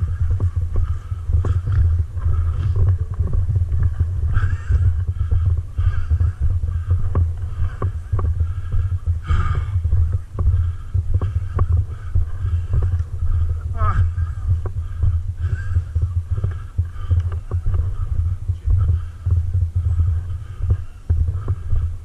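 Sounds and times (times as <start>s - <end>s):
faint voices: 0.0s - 22.0s
camera handling rumble: 12.7s - 13.2s, 16.4s - 18.0s.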